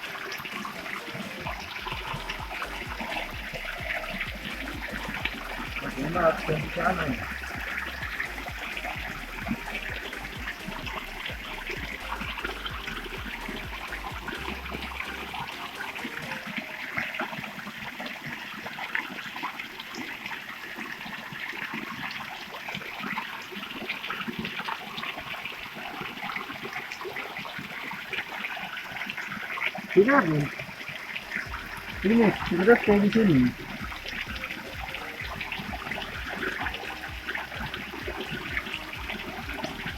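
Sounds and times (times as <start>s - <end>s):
stream trickling over rocks: 0.0s - 39.9s
low rumble: 1.5s - 15.5s.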